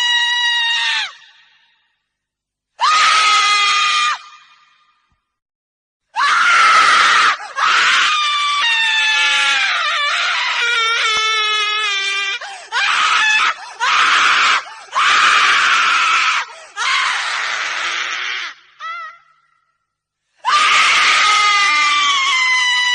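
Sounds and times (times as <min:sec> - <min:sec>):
woman screaming: 0:02.8 - 0:04.6, 0:06.2 - 0:19.4, 0:20.5 - 0:22.9.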